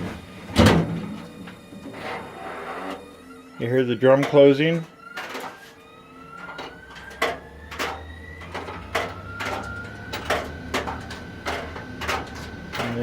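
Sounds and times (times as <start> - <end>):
dryer drum knocking: 0.0 - 1.9, 4.0 - 5.5, 6.5 - 13.0
clothes dryer motor hum and whine: 0.0 - 13.0.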